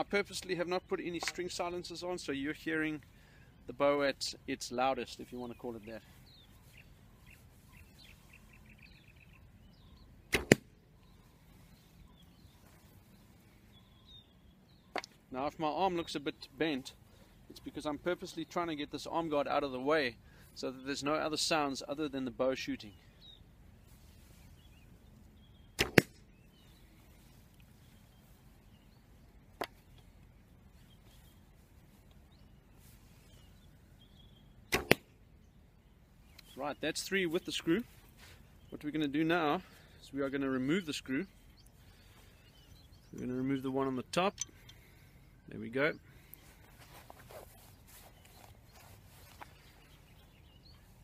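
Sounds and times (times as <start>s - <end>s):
bow shot sharp cracks: 10.3s - 10.7s, 25.8s - 26.3s, 34.7s - 35.2s.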